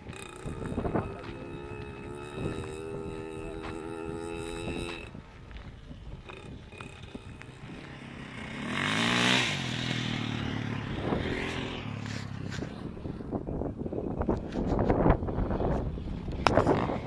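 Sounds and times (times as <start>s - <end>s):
motorbike engine passing: 0.0s - 5.1s, 6.2s - 13.9s.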